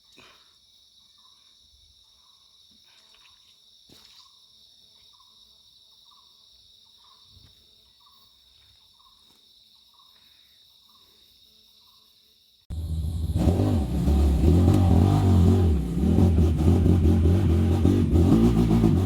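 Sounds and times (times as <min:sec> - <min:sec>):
short repeating insect call: 0:00.0 - 0:12.7
insect chorus drone: 0:00.0 - 0:13.7.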